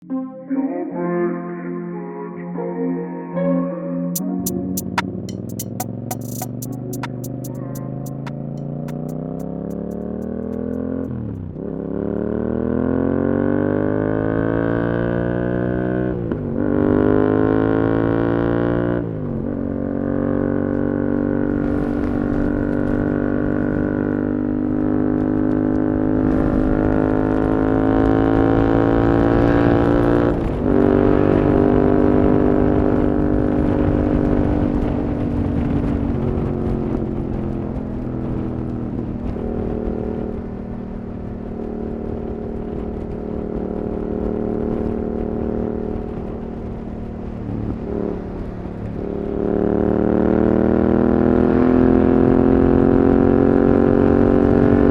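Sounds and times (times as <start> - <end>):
motorcycle engine revving: 4.8 - 54.9.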